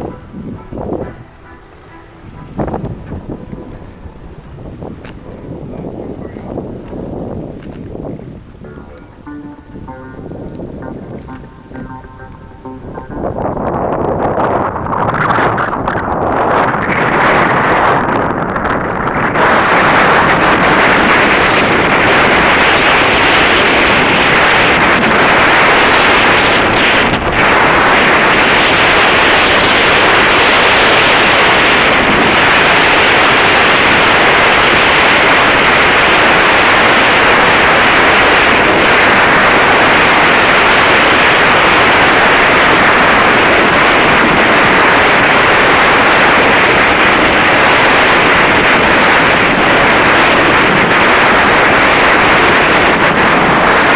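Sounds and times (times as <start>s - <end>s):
wind buffeting microphone: 0.0s - 53.9s.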